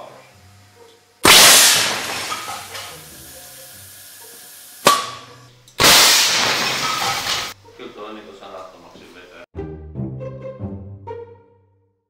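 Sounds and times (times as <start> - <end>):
air cannon blast: 1.2 - 3.0, 5.8 - 7.5
sharp crack with ring: 1.2 - 3.0, 4.8 - 7.6.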